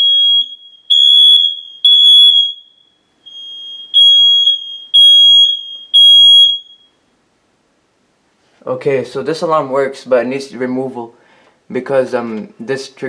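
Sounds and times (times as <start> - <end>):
smoke alarm beeping: 0.0 - 7.0.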